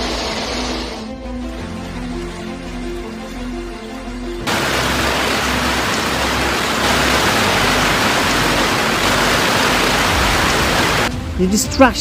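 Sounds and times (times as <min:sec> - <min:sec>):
hailstones pelting down: 0:04.5 - 0:11.1.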